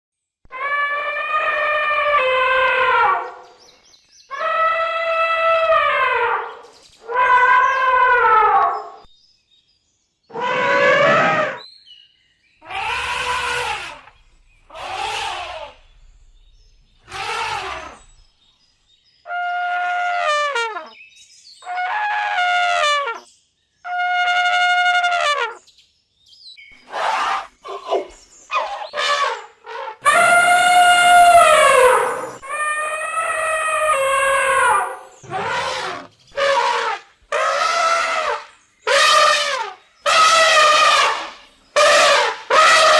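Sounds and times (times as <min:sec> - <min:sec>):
elephant trumpeting: 0:00.5 - 0:03.4, 0:04.3 - 0:09.0, 0:10.3 - 0:11.6, 0:12.6 - 0:16.2, 0:17.0 - 0:18.2, 0:26.8 - 0:42.9.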